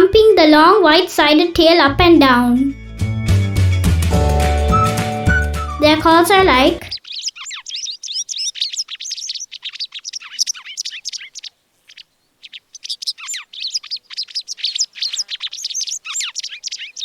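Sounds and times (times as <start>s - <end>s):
bird chirping and twittering: 4.8s - 17.0s.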